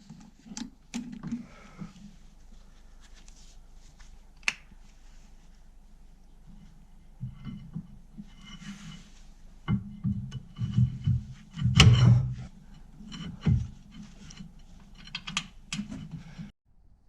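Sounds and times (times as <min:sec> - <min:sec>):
tools and metal parts knocking: 0:09.6 - 0:16.5
thuds: 0:09.7 - 0:12.5.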